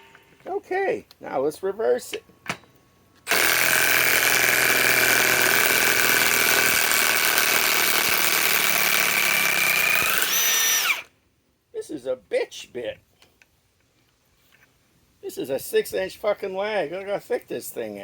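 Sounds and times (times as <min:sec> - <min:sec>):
impact wrench motor whine: 0:03.2 - 0:11.1.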